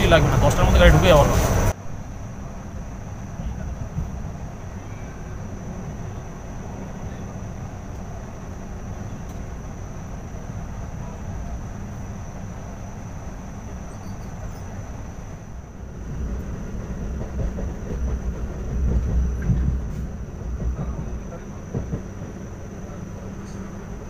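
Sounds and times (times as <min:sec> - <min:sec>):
train wheels rumbling on rails: 0:00.0 - 0:24.0
faint high whine: 0:01.8 - 0:16.0.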